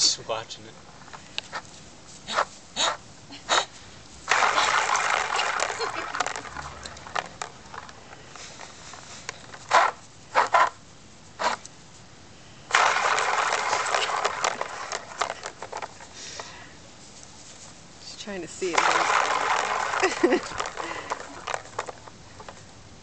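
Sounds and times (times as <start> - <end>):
plastic ball rattling around track: 4.2 - 10.6, 12.7 - 16.1, 18.5 - 22.7.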